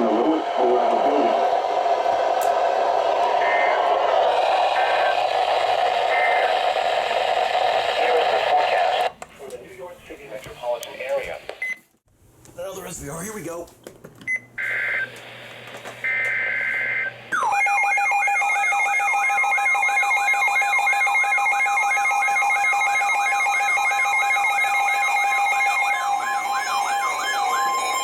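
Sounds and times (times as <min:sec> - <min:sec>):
two-pitch digital header burst: 0:03.0 - 0:06.8.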